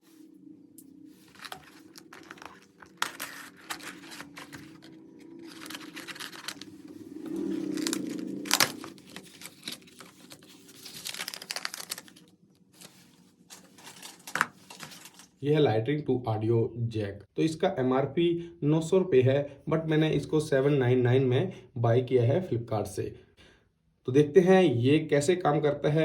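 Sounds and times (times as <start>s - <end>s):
packaging crinkling and tearing: 1.2s - 15.4s.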